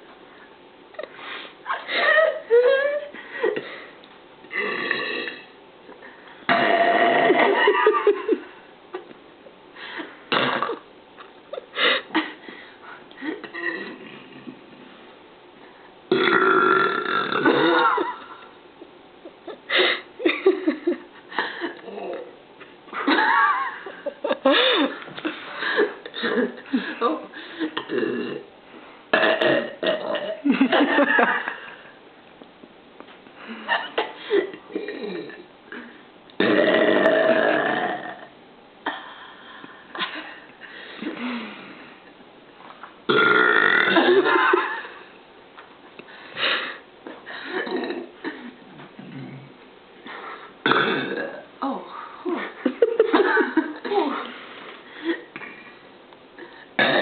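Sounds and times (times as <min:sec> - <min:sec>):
woman belching: 0:04.5 - 0:05.5, 0:06.5 - 0:07.6, 0:10.3 - 0:10.8, 0:16.1 - 0:18.0, 0:27.8 - 0:28.5, 0:29.2 - 0:30.4, 0:36.4 - 0:38.3, 0:43.1 - 0:44.2, 0:47.6 - 0:48.1, 0:50.6 - 0:51.8, 0:56.8 - 0:57.0.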